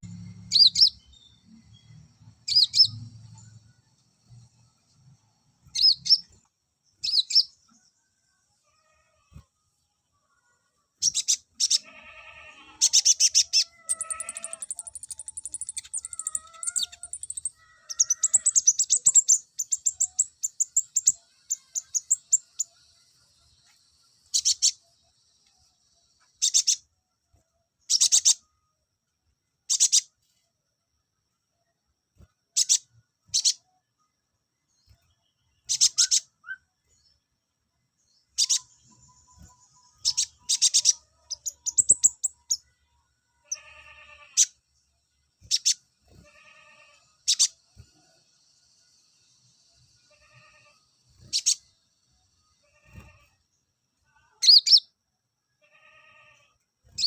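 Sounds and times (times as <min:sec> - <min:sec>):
songbird chirping and trilling: 0:00.0 - 0:30.4, 0:31.6 - 0:55.0, 0:55.6 - 0:57.0
lower whistled bird notes: 0:35.7 - 0:36.7.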